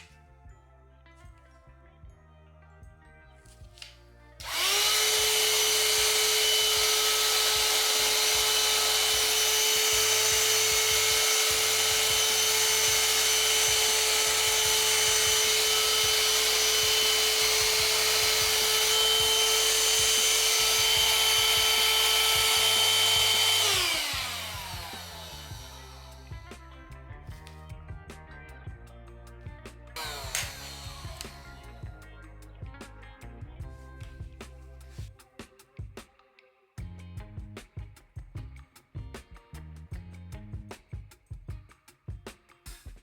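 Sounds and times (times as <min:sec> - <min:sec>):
hand-held vacuum cleaner running: 0:04.4 - 0:26.4, 0:30.0 - 0:31.9.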